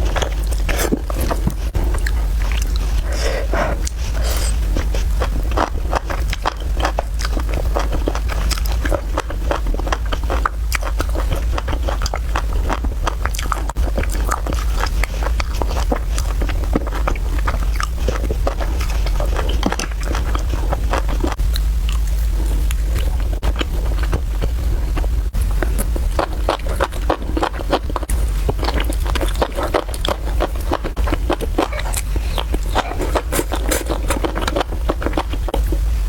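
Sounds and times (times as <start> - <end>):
chewing and biting noodles: 0.0 - 35.8
steady low hum: 0.0 - 36.0.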